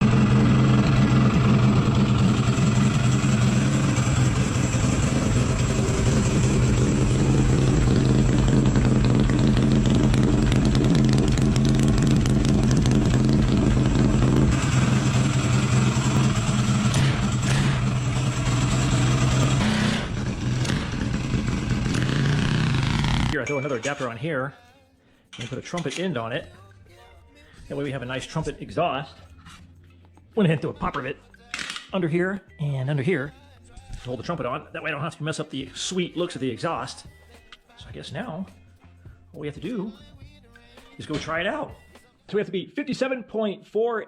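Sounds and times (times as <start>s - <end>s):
minibike engine running: 0.0s - 23.4s.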